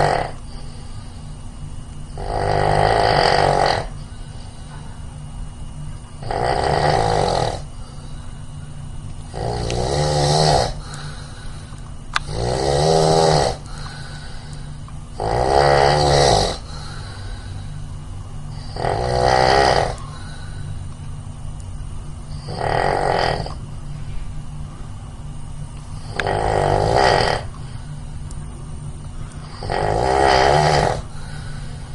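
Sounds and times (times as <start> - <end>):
person snoring loudly: 0.0 - 0.4, 2.2 - 3.9, 6.2 - 7.7, 9.3 - 11.5, 12.2 - 14.4, 15.2 - 17.6, 18.5 - 20.5, 22.4 - 23.6, 26.0 - 27.5, 29.5 - 31.9
steady low hum: 0.0 - 31.9.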